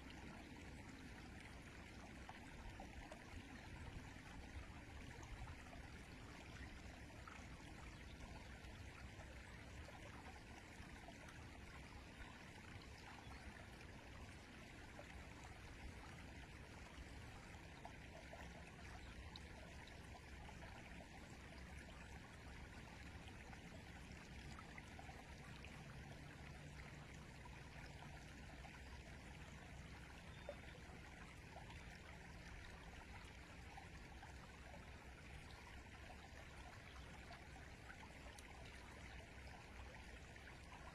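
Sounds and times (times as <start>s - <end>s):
river water flowing: 0.0s - 40.9s.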